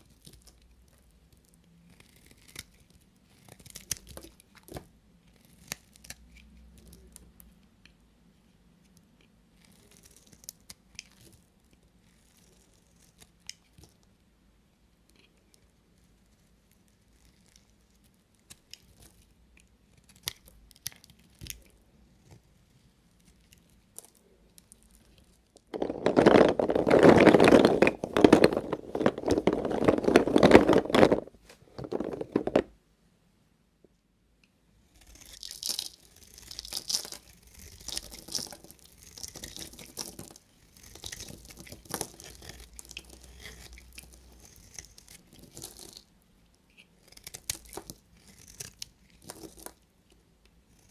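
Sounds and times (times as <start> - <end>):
knife scraping soap: 0.0 - 7.2, 9.2 - 14.1, 15.1 - 31.2, 34.9 - 46.1, 46.7 - 50.9
knife crunching through soap: 1.4 - 7.1, 34.9 - 46.1, 46.7 - 49.8.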